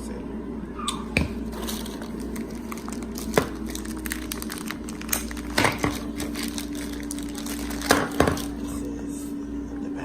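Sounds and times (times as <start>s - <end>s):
steady low hum: 0.0s - 10.0s
plastic wrap crinkling: 1.3s - 8.9s.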